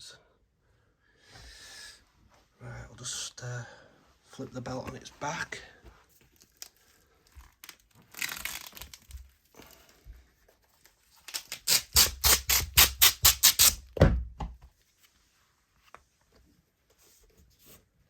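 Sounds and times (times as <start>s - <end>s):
leather creak: 6.4s - 9.8s.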